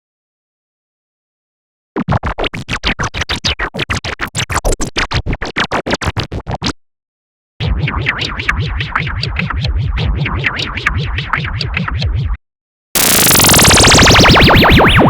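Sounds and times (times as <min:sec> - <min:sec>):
pulsing synth filter sweep: 0:13.0 - 0:15.0.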